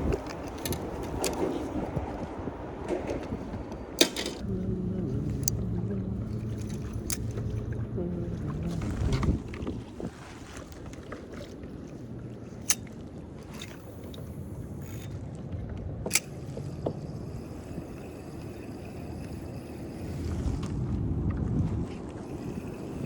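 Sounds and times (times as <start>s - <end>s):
wind: 0.0s - 23.0s.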